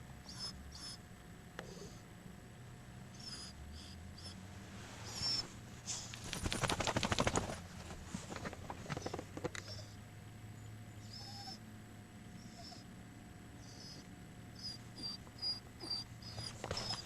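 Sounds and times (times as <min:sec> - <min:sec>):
dog whining: 0:00.2 - 0:01.0, 0:03.2 - 0:04.4, 0:05.0 - 0:05.5, 0:08.9 - 0:10.0, 0:10.6 - 0:11.6, 0:12.4 - 0:12.9, 0:13.6 - 0:17.0.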